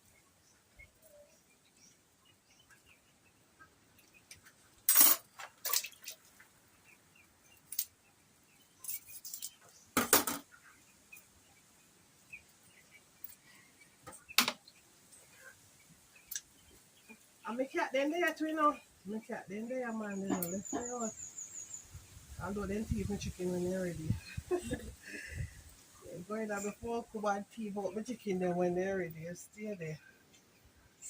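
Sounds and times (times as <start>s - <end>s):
faint bird chirps: 0.0s - 4.6s, 18.4s - 27.1s.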